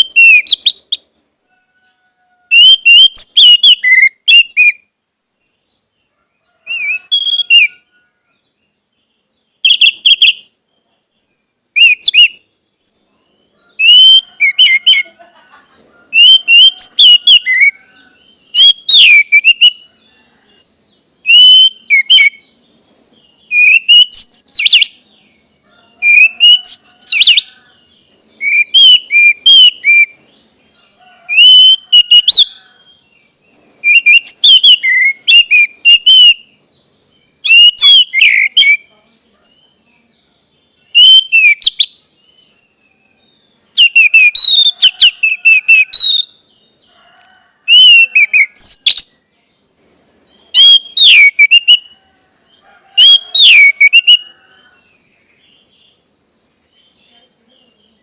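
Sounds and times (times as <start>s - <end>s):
thrush whistling song: 0.0s - 1.1s, 2.5s - 5.6s, 6.6s - 8.0s, 9.2s - 15.2s, 16.0s - 36.6s, 37.3s - 38.9s, 40.8s - 42.7s, 43.6s - 46.4s, 47.6s - 49.2s, 50.3s - 52.0s, 53.0s - 54.6s
steady high hiss: 0.0s - 58.0s.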